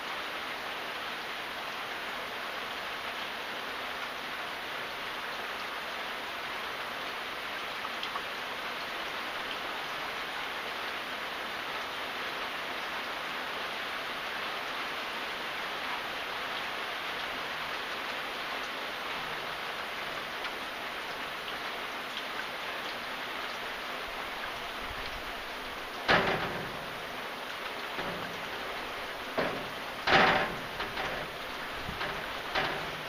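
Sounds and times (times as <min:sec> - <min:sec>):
steady rain falling: 0:00.0 - 0:33.0
loud knocks: 0:25.2 - 0:33.0.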